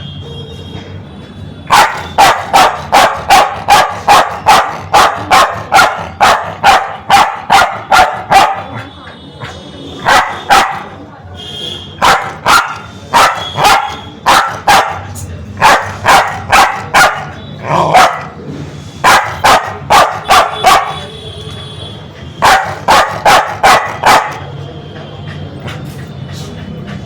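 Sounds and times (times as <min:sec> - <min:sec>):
dog barking sharply: 0:01.7 - 0:08.9, 0:10.0 - 0:11.0, 0:12.0 - 0:18.4, 0:19.0 - 0:21.1, 0:22.4 - 0:24.4.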